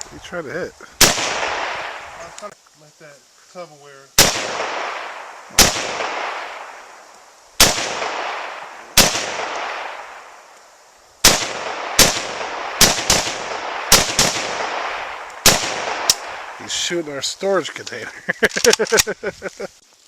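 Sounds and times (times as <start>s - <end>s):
rifle shots with echo: 1.0s - 2.3s, 4.2s - 6.9s, 7.6s - 10.4s, 11.2s - 16.6s.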